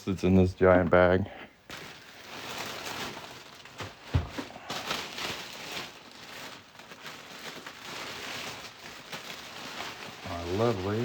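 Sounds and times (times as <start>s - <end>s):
plastic bag rustling: 1.7s - 11.0s
dull thump: 4.1s - 4.4s.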